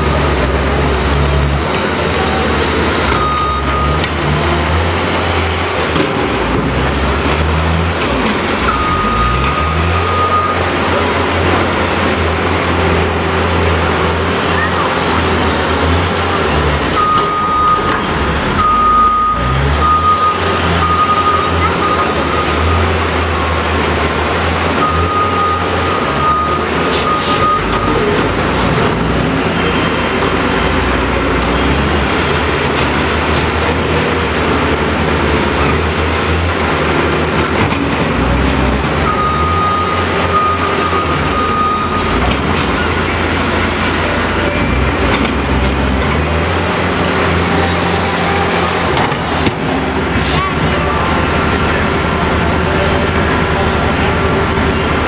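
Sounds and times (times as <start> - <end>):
diesel engine running: 0.0 - 55.0
backup alarm beeping: 18.6 - 22.8, 24.8 - 28.0.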